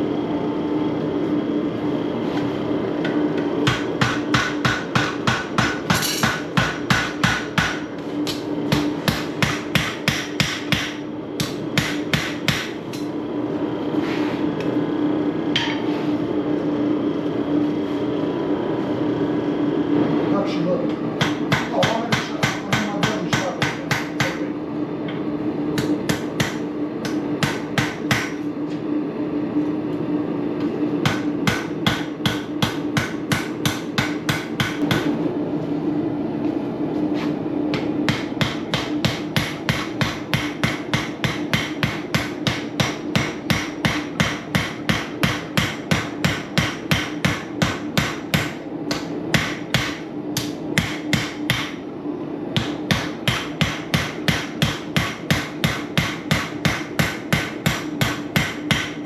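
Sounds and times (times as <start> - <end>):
hammer striking hot steel: 3.6 - 13.1, 15.5 - 15.9, 21.2 - 24.4, 25.8 - 28.4, 31.0 - 35.1, 37.7 - 51.8, 52.6 - 59.0.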